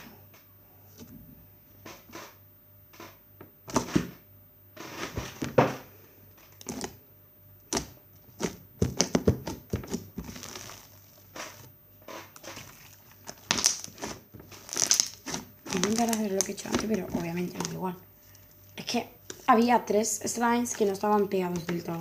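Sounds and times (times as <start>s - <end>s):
slime squelching and crackling: 6.6s - 7.0s, 7.7s - 11.0s, 12.4s - 18.0s.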